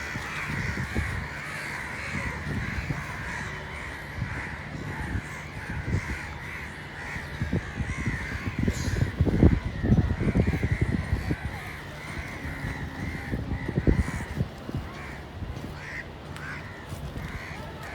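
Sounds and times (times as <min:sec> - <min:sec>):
crows cawing: 0:00.0 - 0:15.2, 0:15.8 - 0:17.9.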